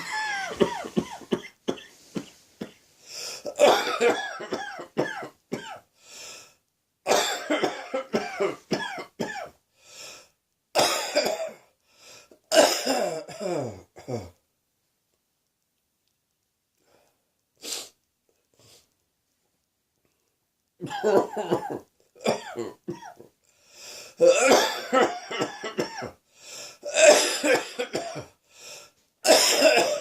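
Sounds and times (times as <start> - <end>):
person coughing: 0.0 - 2.8, 3.4 - 5.8, 7.1 - 9.5, 10.8 - 11.6, 12.5 - 14.4, 20.8 - 23.3, 24.2 - 26.2, 26.9 - 28.4, 29.2 - 30.0.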